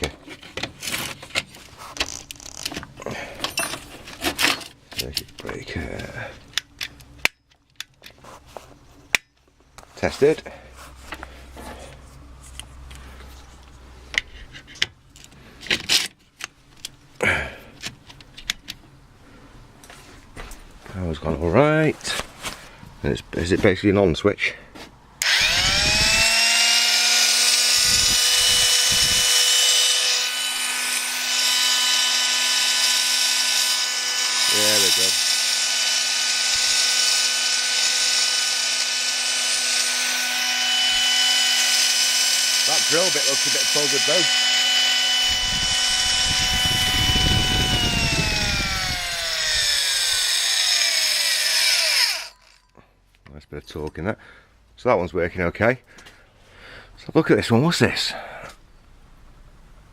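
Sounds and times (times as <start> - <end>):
electric drill motor whine: 25.2 - 52.7.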